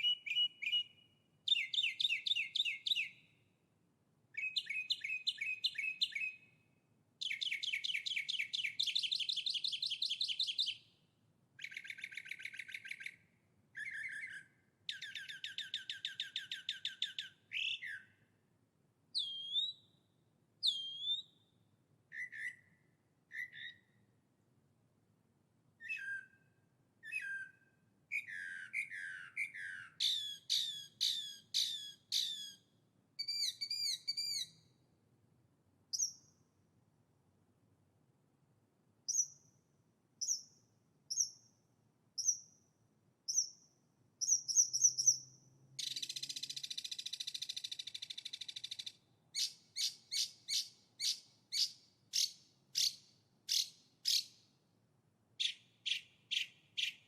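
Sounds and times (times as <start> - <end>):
songbirds singing: 0.0 - 3.5, 4.4 - 6.6, 7.2 - 11.0, 11.6 - 18.2, 19.2 - 24.0, 27.0 - 34.8, 35.9 - 36.4, 39.1 - 39.6, 40.2 - 41.6, 42.2 - 42.7, 43.3 - 54.5, 55.4 - 57.0.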